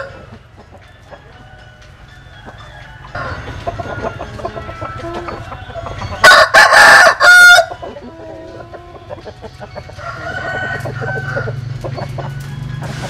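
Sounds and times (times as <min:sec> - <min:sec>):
rooster crow: 0:00.0 - 0:00.3, 0:01.6 - 0:03.6, 0:06.2 - 0:07.9, 0:10.0 - 0:11.7
chickens clucking and calling: 0:00.0 - 0:13.0.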